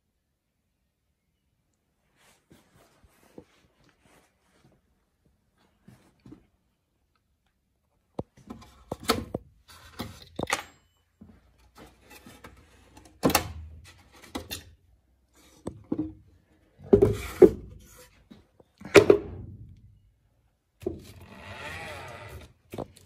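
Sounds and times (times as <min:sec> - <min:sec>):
objects knocking and clunking: 0:08.1 - 0:14.8, 0:15.4 - 0:19.8.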